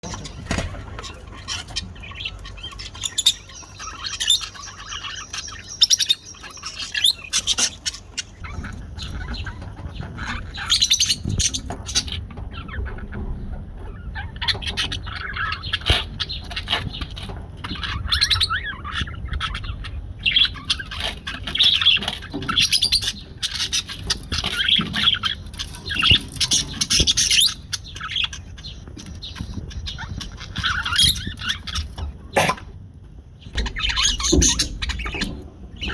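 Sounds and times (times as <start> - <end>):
budgerigar chattering: 0.0 - 12.9, 33.5 - 35.9
budgerigar squawks: 33.6 - 35.9.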